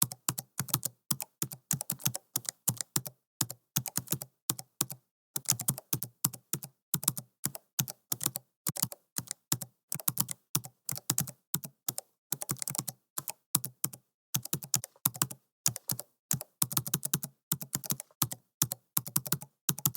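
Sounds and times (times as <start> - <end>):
typing on computer keyboard: 0.0 - 19.9.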